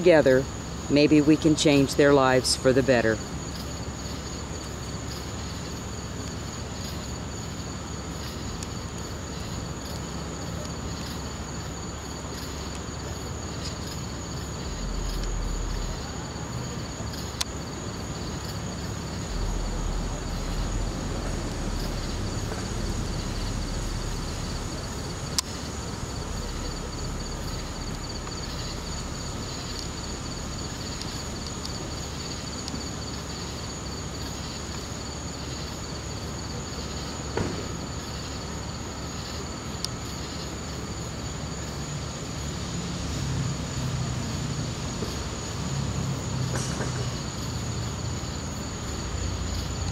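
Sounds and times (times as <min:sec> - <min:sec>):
insects chirping: 0:00.0 - 0:49.9
low rumble: 0:14.4 - 0:16.2, 0:18.7 - 0:32.4.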